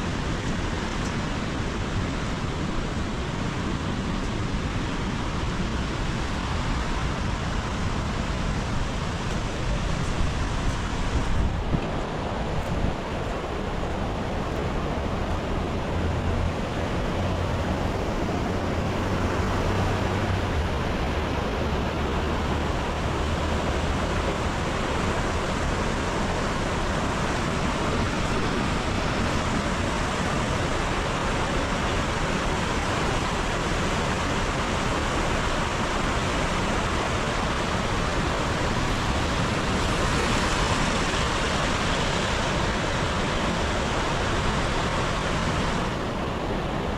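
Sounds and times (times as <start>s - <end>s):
heavy rain falling: 12.3s - 46.9s.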